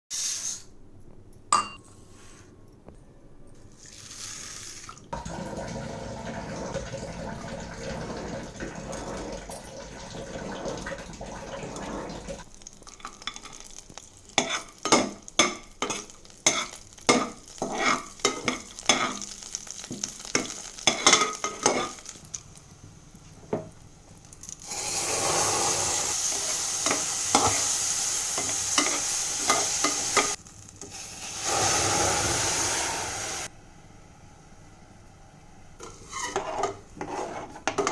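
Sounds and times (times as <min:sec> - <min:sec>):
spoon knocking and scraping pan: 0:14.4 - 0:22.1, 0:26.8 - 0:27.7, 0:28.4 - 0:30.4, 0:35.8 - 0:37.9
steady hiss: 0:21.8 - 0:34.8
loud sizzling: 0:24.6 - 0:33.5.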